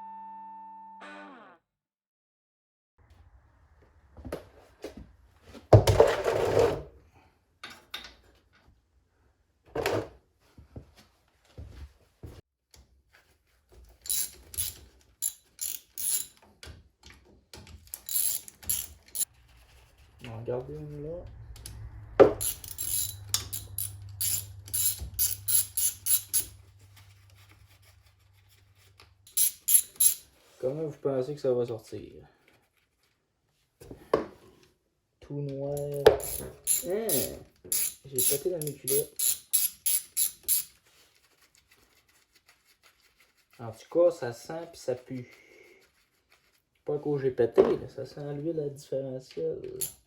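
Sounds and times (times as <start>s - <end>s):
rattling clatter of tools: 14.0s - 16.7s, 17.6s - 19.3s, 21.3s - 27.9s, 28.9s - 30.4s, 35.8s - 40.7s, 49.7s - 50.0s
socket ratchet clicking: 14.1s - 16.3s, 17.9s - 19.3s, 22.4s - 26.6s, 29.3s - 30.2s, 35.8s - 40.7s, 49.8s - 50.0s
low steady hum: 19.3s - 29.1s.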